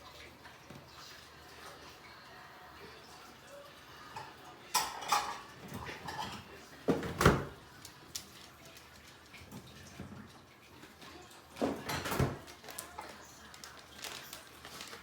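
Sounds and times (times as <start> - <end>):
items knocking inside refrigerator: 6.9 - 7.6, 11.6 - 12.5.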